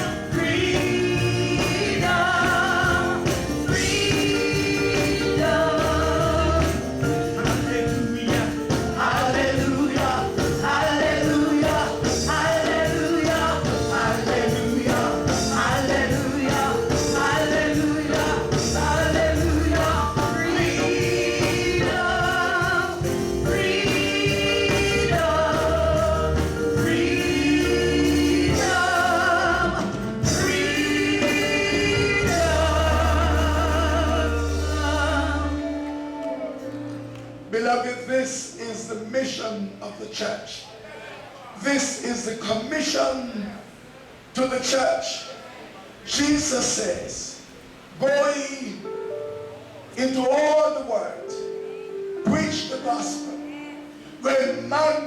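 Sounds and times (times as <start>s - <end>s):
tambourine: 0.0s - 35.4s
drums: 0.0s - 37.1s
bass: 0.0s - 37.5s
gospel voices singing: 0.0s - 55.0s.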